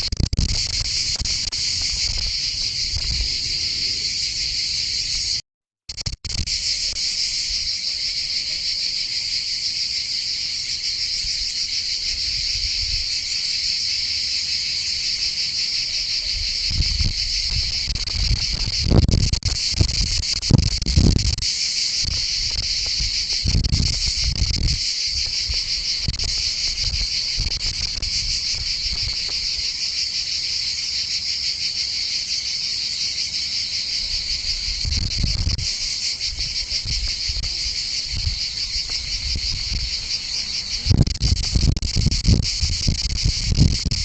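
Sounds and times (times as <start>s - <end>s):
insects buzzing trill: 0.0s - 44.0s.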